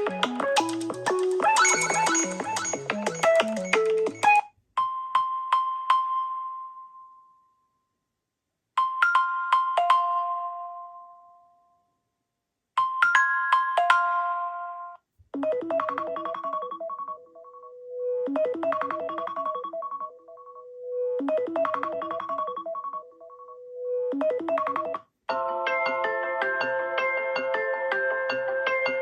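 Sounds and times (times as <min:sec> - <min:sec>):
phone ringtone of rapid notes: 0:00.6 - 0:04.4, 0:13.0 - 0:17.7, 0:18.4 - 0:29.0
bell-like chime: 0:01.6 - 0:03.7.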